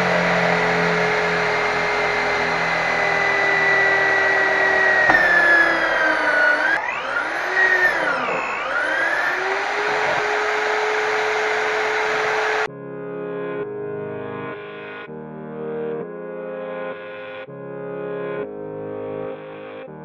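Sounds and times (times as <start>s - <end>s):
electric drill motor whining: 0.0s - 12.7s.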